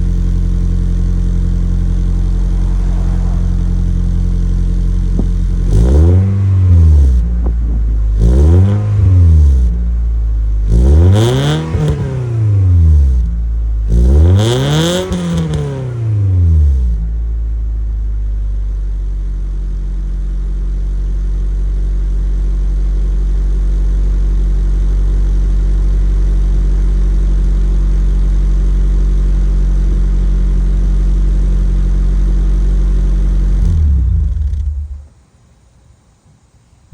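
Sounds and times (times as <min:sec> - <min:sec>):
car engine revving and idling: 0:00.0 - 0:35.2.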